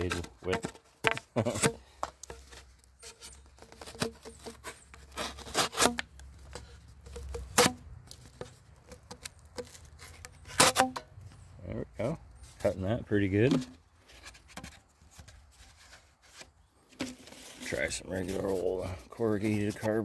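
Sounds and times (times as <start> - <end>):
knife cutting cardboard tube: 0.0 - 11.1.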